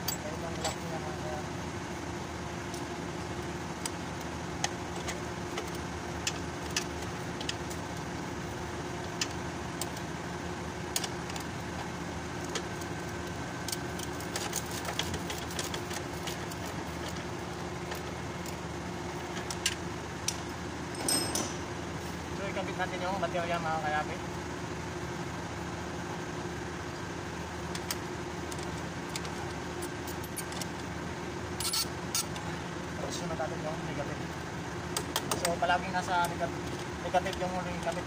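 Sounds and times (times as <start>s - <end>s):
steady background hum: 0.0s - 38.0s.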